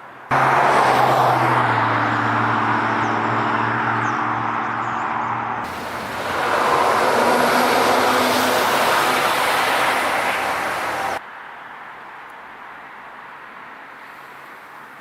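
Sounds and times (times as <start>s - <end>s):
moving vehicle rushing: 0.3s - 11.2s.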